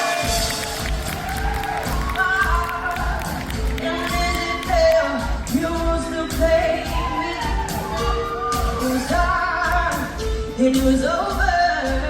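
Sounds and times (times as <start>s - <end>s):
bass drum beat: 0.0s - 12.0s
live band playing: 0.0s - 12.0s
woman singing pop ballad: 2.1s - 12.0s.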